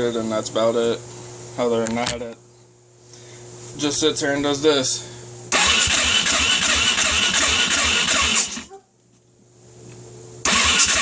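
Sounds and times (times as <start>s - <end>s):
engine cranking on starter: 5.5s - 8.7s, 10.4s - 11.0s.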